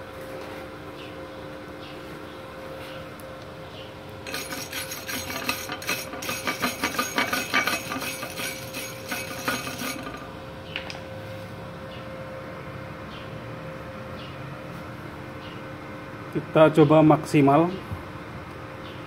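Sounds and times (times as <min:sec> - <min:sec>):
welding arc crackling: 0:04.3 - 0:10.4.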